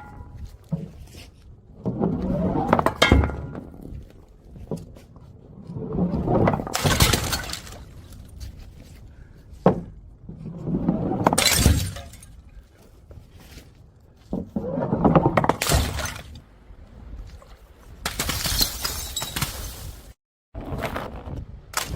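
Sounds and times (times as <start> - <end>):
glass bottles smashing on stairs: 18.1 - 20.0.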